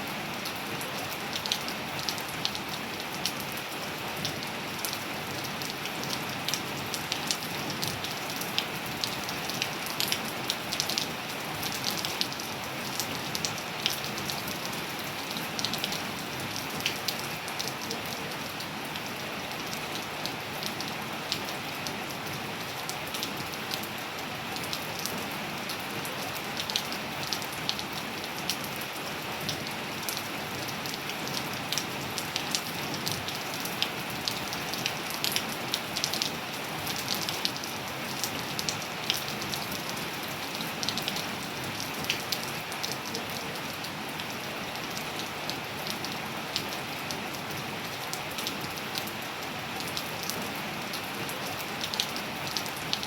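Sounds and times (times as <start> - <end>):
steady rain: 0.0 - 53.0.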